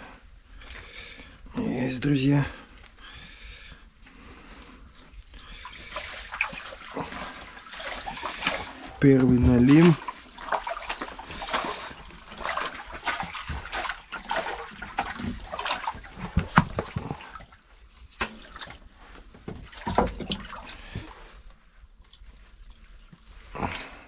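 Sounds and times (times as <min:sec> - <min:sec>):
water splashing and dripping: 0:05.0 - 0:24.0
fish knocking and slapping: 0:05.5 - 0:17.5, 0:18.1 - 0:21.3.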